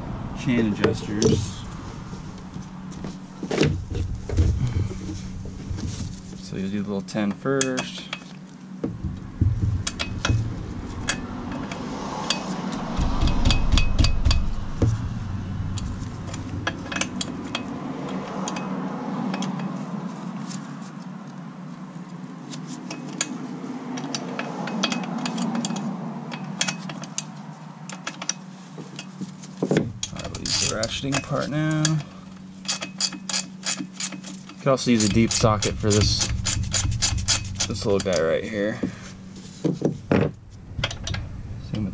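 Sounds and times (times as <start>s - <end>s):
handling rumble: 0.0s - 41.9s
wrench clicking on metal nuts: 7.3s - 8.3s, 15.7s - 19.7s, 22.8s - 28.4s, 30.0s - 38.2s.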